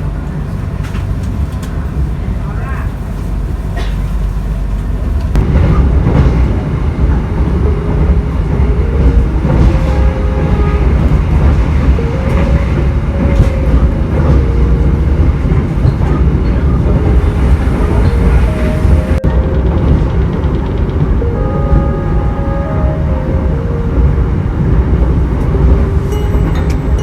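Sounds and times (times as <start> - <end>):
train rumbling on rails: 0.0 - 27.0
faint wandering tones: 6.9 - 27.0.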